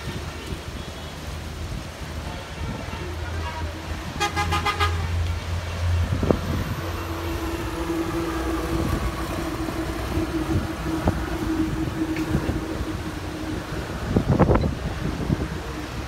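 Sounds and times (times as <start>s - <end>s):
rain: 0.0s - 16.0s
storm wind: 0.0s - 16.0s
vehicle motor hum: 4.5s - 16.0s.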